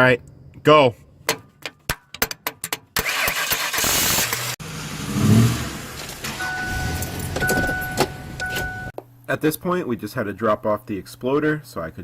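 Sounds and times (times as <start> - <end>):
engine revving: 3.0 - 7.4
engine starting and running: 3.0 - 8.9
two-tone electronic warning chime: 6.4 - 9.0.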